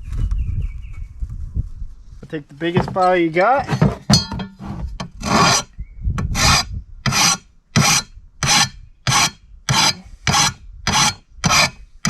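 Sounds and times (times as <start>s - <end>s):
hand file rasping on metal blade: 4.6s - 11.8s.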